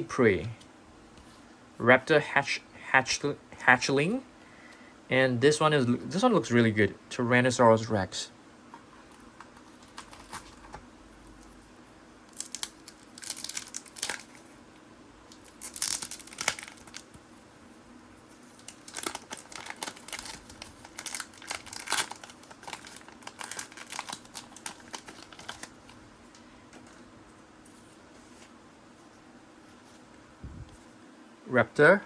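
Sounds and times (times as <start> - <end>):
paper and foil tearing and crinkling: 12.3 - 14.4, 15.4 - 17.1, 18.5 - 25.8.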